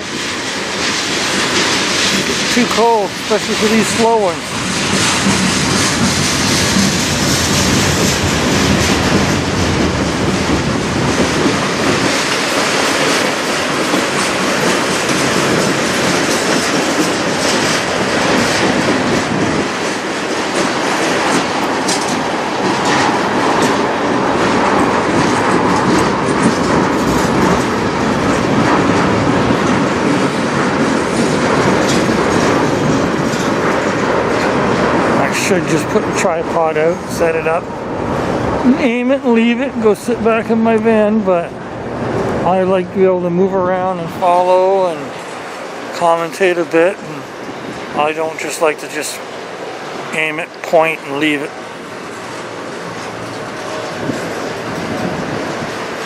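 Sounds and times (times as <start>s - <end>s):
wheels clicking over track joints: 0.0s - 36.3s
freight train wheels rumbling: 0.0s - 56.0s.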